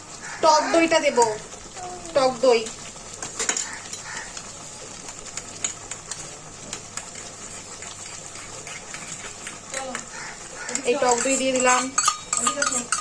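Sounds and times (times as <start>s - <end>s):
spoon tapping in pan: 8.9s - 10.1s, 10.7s - 13.0s.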